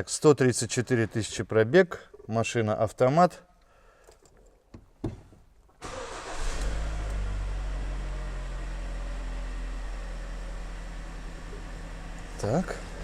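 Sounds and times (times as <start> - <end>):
car engine starting and idling: 5.8 - 13.0.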